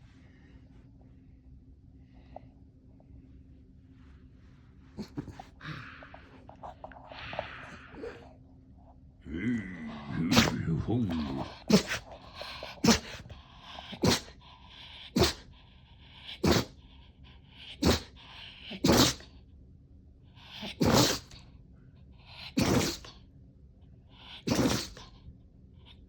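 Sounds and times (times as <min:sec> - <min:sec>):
pet sneezing: 0:05.0 - 0:05.9, 0:10.2 - 0:14.4, 0:15.0 - 0:15.5, 0:16.2 - 0:16.8, 0:17.6 - 0:19.3, 0:20.5 - 0:21.4, 0:22.4 - 0:23.2, 0:24.2 - 0:25.1.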